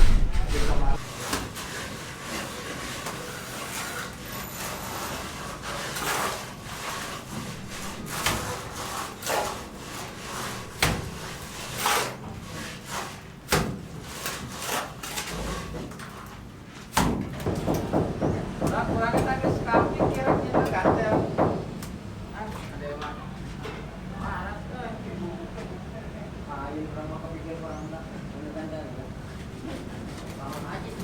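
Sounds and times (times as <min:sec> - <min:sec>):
scraping strokes: 0:00.0 - 0:13.2, 0:29.4 - 0:31.0.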